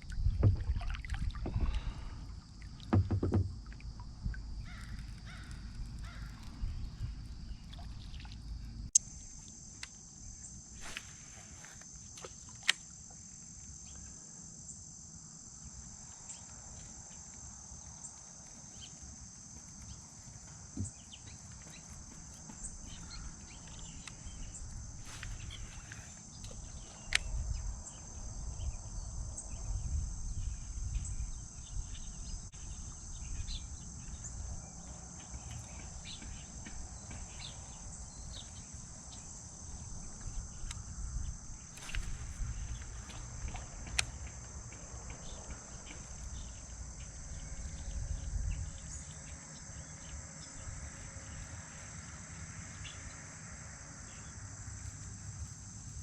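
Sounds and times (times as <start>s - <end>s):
crickets chirping: 0.0s - 56.0s
sharp knocks: 2.9s - 3.6s.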